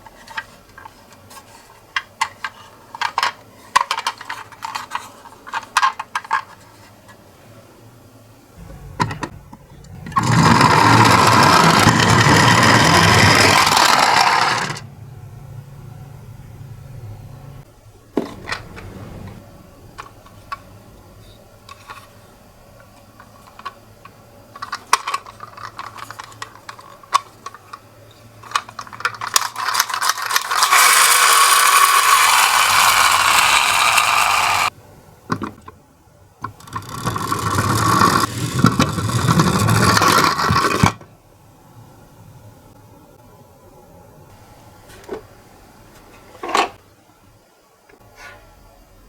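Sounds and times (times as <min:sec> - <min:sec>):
toy wheels rolling and rattling: 0:00.1 - 0:06.9, 0:09.9 - 0:14.9, 0:21.6 - 0:22.2, 0:23.2 - 0:34.8, 0:36.4 - 0:41.0.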